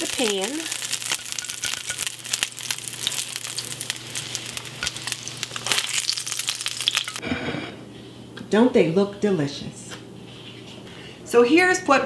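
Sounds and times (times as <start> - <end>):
meat sizzling in a frying pan: 0.0 - 7.2.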